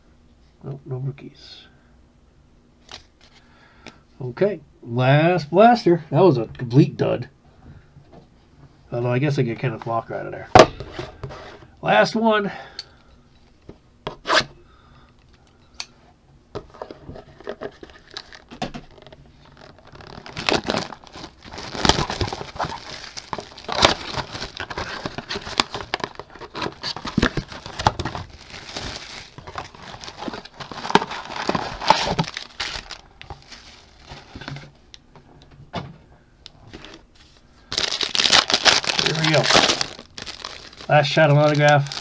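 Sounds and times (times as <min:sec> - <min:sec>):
plastic wrapping crinkling: 0:16.7 - 0:34.7, 0:36.8 - 0:42.0.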